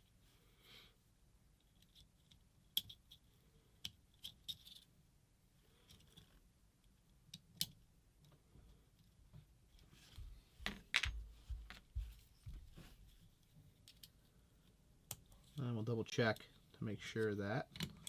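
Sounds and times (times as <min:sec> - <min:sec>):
small clicks of parts handled: 0:01.6 - 0:04.9, 0:05.8 - 0:09.9, 0:13.7 - 0:15.6, 0:17.7 - 0:18.0.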